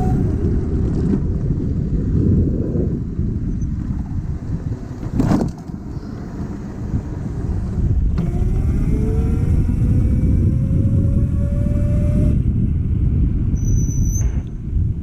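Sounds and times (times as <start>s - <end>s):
motor whine rising: 0.0s - 0.4s, 8.0s - 12.4s
scooter rumble: 0.0s - 13.8s
wind noise on microphone: 0.0s - 15.0s.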